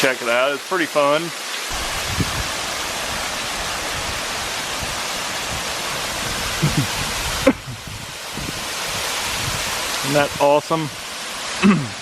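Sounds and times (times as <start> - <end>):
waterfall splashing down rock: 0.0 - 12.0.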